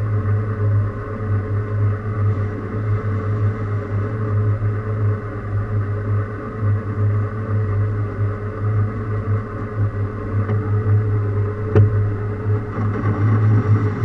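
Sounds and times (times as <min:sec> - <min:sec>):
machine tool motor hum: 0:00.0 - 0:14.0.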